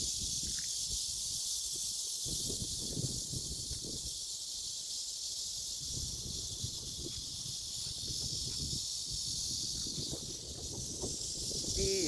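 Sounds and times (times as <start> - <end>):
high-pitched hiss: 0.0 - 12.0
wind buffeting microphone: 2.2 - 4.2, 5.8 - 12.0.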